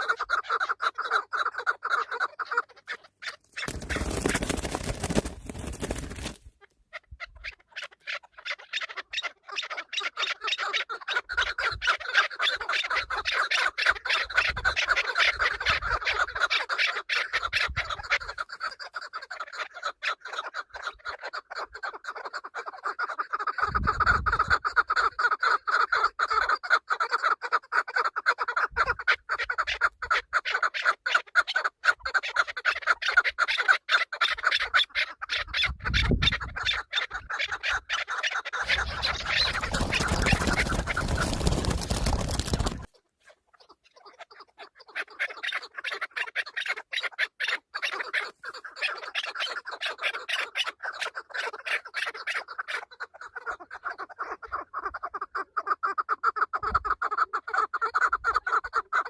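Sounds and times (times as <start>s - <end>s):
partridge clucking: 38.6s - 42.9s.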